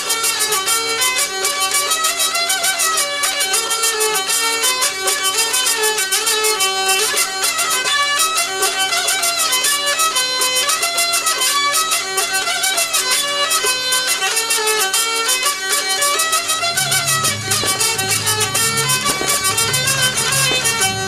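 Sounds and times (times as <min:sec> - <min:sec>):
fast lively violin music: 0:00.0 - 0:21.0
held low note: 0:16.6 - 0:21.0.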